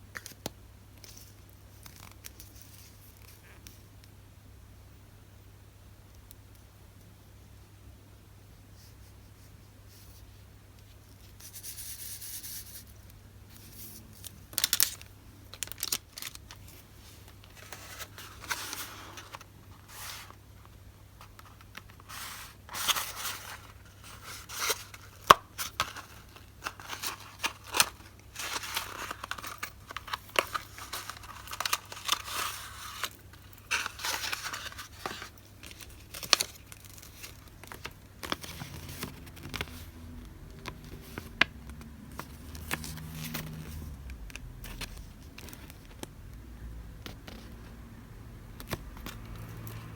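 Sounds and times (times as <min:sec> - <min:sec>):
paper rustling and crinkling: 0:13.5 - 0:46.1.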